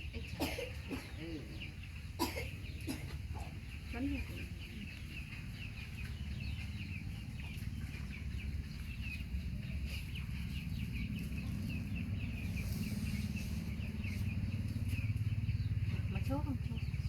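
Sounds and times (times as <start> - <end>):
birds chirping: 0.0 - 17.0
low steady rumble: 3.7 - 17.0.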